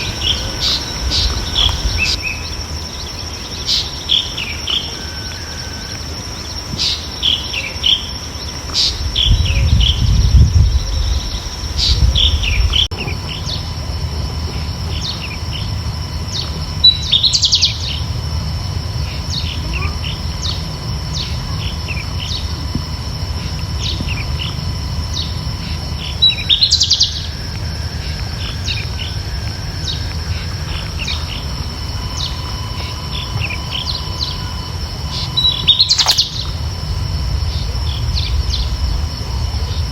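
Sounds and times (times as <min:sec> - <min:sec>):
loud rising bird call: 0:00.0 - 0:13.8, 0:18.9 - 0:39.8
high insect-like drone: 0:00.0 - 0:39.9
songbirds chirping: 0:00.0 - 0:39.9
low rumble: 0:08.9 - 0:39.9.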